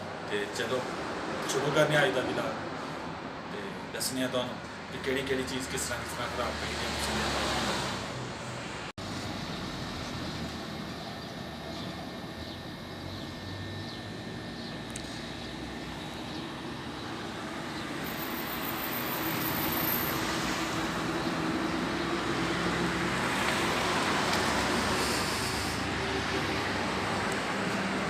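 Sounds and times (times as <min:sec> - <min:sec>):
road traffic noise: 0:00.0 - 0:28.0
vehicle passing: 0:06.0 - 0:10.5, 0:17.1 - 0:28.0.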